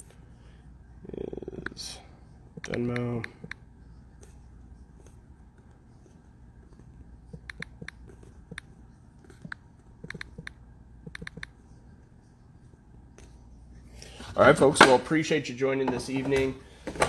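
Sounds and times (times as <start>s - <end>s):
faint low hum: 0.0s - 17.0s
keyboard key clicks: 9.4s - 11.6s.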